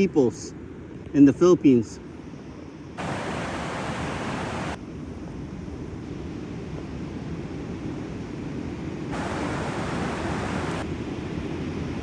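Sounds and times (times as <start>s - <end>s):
wind on microphone: 2.4s - 12.0s
ocean surf: 3.0s - 4.8s, 7.1s - 12.0s.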